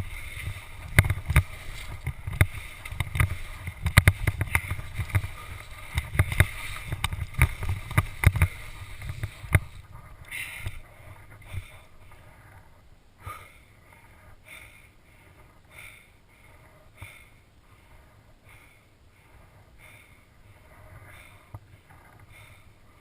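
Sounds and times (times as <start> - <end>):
skis running on snow: 0.0 - 10.2
helmet camera chattering in mount: 0.0 - 12.8
heavy breathing: 0.0 - 23.0.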